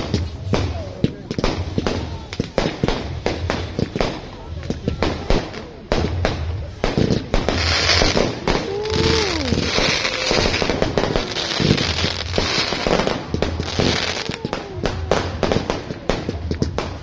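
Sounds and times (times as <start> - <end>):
fireworks crackling and banging: 0.0 - 17.0
fireworks hissing: 0.0 - 17.0.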